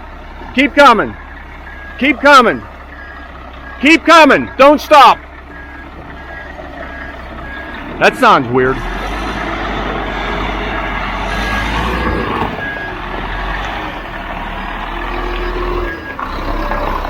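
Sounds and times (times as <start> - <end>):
diesel engine rumble: 0.0 - 17.0
reverse alarm beeping: 1.1 - 7.9, 10.0 - 13.6, 14.8 - 16.8.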